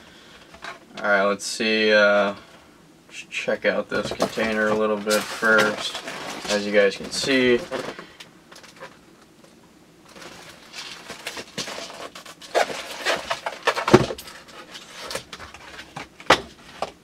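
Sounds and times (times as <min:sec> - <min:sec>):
packaging rustling and scraping: 0:03.9 - 0:09.0, 0:10.1 - 0:17.0.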